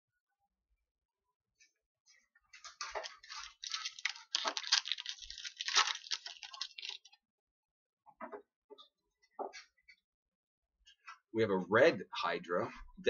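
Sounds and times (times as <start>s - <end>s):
wrapper crinkling: 2.6s - 7.2s.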